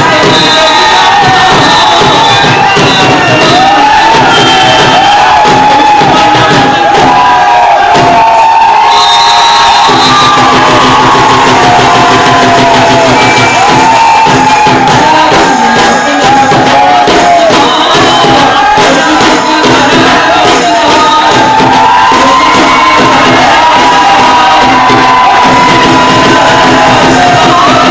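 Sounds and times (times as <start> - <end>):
crowd shouting and cheering: 0.0 - 27.9
loud bhangra music: 0.0 - 27.9.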